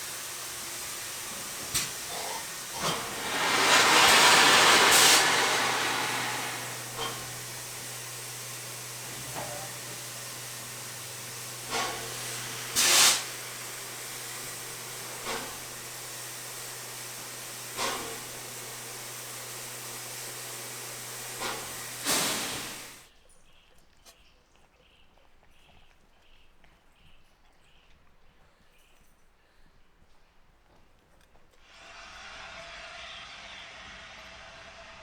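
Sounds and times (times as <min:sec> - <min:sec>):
steam hissing: 0:00.0 - 0:23.1, 0:31.6 - 0:35.0.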